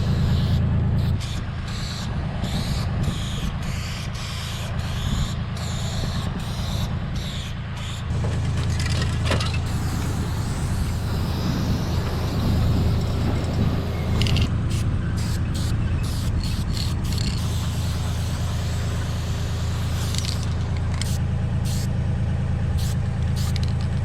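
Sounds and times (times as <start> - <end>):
spray paint hissing bursts: 0.0 - 21.9, 22.8 - 24.0
steady low hum: 0.0 - 24.0
spray can rattle: 8.1 - 21.9, 22.8 - 24.0.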